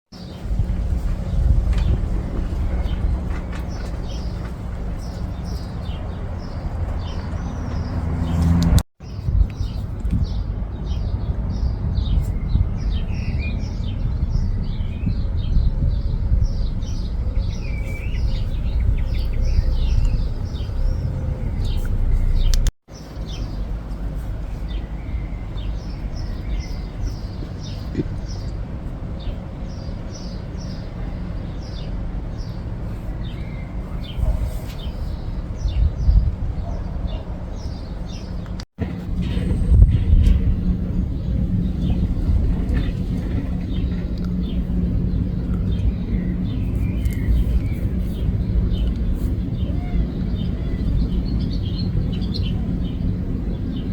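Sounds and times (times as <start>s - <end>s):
steady low rumble: 0.2s - 27.1s, 38.4s - 53.9s
small birds chirping: 0.2s - 28.6s, 39.2s - 53.9s.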